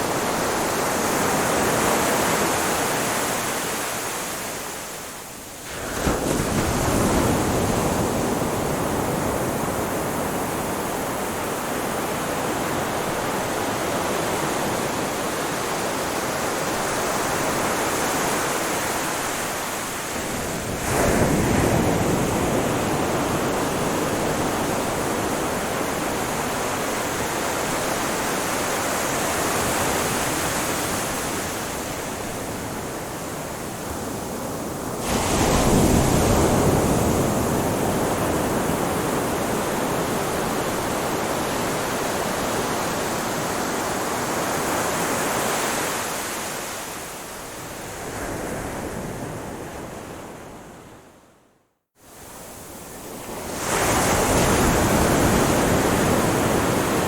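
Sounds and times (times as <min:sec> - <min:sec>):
waves washing on shore: 0:00.0 - 0:50.7, 0:52.1 - 0:57.0
waves breaking: 0:34.4 - 0:47.0.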